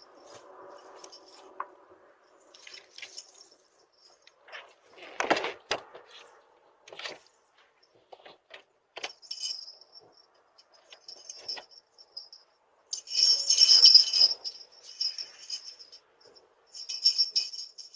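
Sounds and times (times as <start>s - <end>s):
jingle bells shaken: 9.2s - 17.9s.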